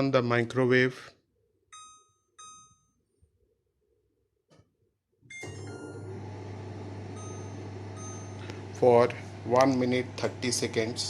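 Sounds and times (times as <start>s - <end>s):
keypad beep: 1.7s - 2.9s, 5.3s - 6.1s, 7.1s - 8.6s
microwave click: 5.3s - 11.0s
microwave oven humming: 5.3s - 11.0s.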